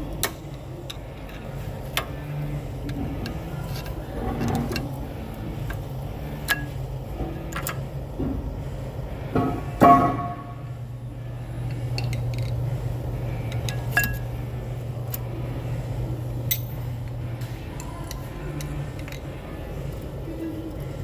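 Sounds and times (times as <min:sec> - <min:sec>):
steady low hum: 0:00.0 - 0:21.0
metal tools clinking: 0:13.5 - 0:14.3.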